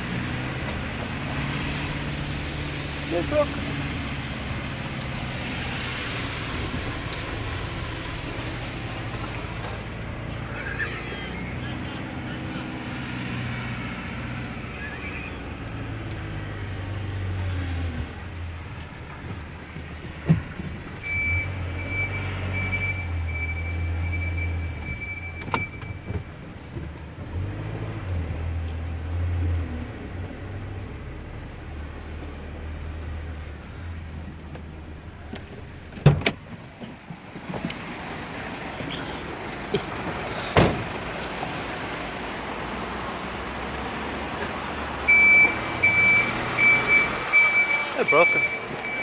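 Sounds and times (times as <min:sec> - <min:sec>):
cars passing slowly: 0:00.0 - 0:49.0
loud thump: 0:40.6 - 0:40.9.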